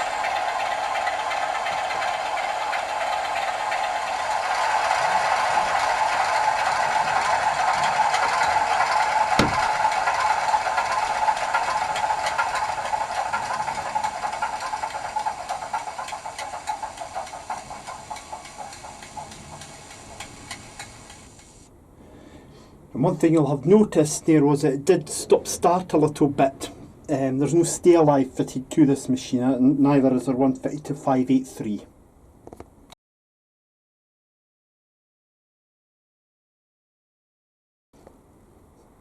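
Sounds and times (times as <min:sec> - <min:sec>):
model train engine sound: 0:00.0 - 0:21.7
wheels rattling on rails: 0:00.0 - 0:21.7.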